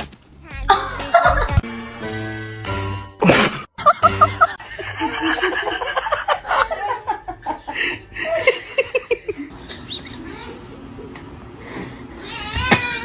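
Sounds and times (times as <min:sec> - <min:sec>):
music: 0:00.0 - 0:03.2
people laughing: 0:00.6 - 0:01.6, 0:03.8 - 0:09.5.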